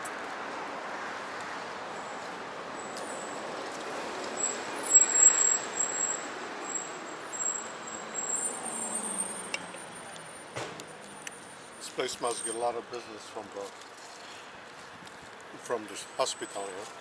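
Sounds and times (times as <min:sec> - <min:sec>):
street traffic passing: 0:00.0 - 0:17.0
brake squeal: 0:02.8 - 0:03.4, 0:04.3 - 0:13.3.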